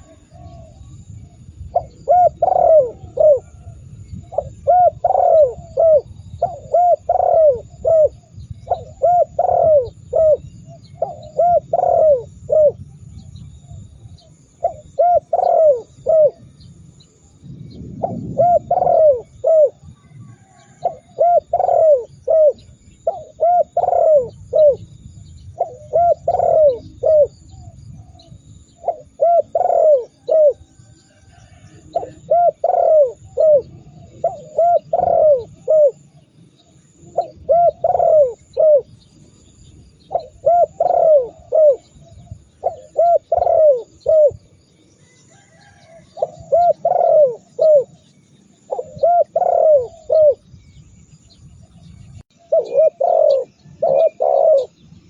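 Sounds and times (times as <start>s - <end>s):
dove cooing: 0.0s - 50.6s, 52.3s - 55.0s.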